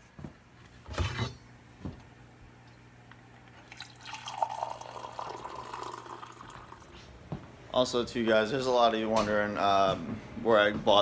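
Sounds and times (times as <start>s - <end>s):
liquid pouring: 3.6s - 7.0s.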